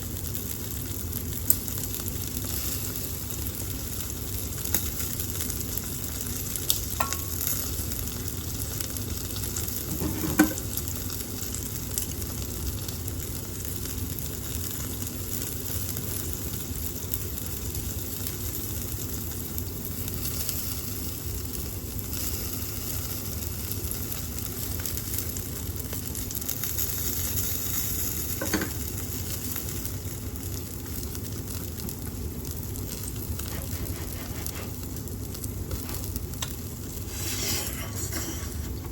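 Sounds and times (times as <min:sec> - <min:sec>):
meat sizzling on grill: 0:00.0 - 0:38.9.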